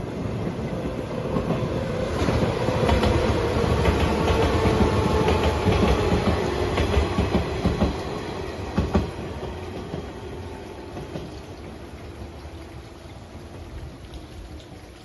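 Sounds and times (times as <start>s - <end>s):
train rumble: 0.0s - 12.7s
train wheels clicking over rail joints: 1.4s - 8.0s, 8.7s - 10.1s.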